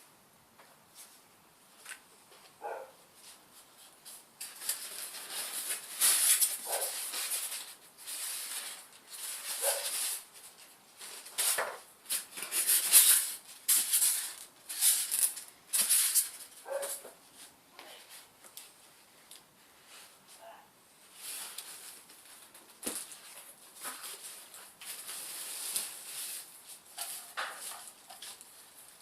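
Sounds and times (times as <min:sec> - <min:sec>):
packaging rustling and crinkling: 0:03.8 - 0:17.2, 0:21.1 - 0:29.0.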